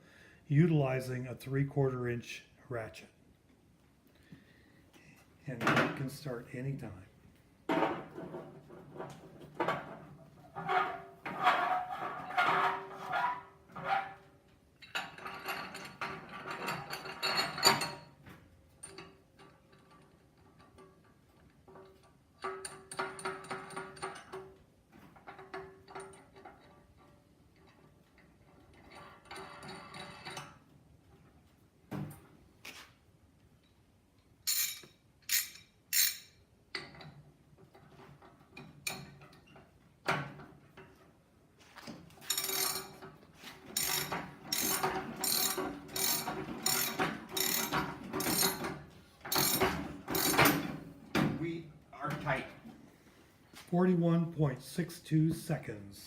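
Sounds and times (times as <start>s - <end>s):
metal scraping and clinking: 14.8s - 18.2s, 34.4s - 37.2s, 41.8s - 50.9s
ratchet clicking: 43.8s - 48.6s.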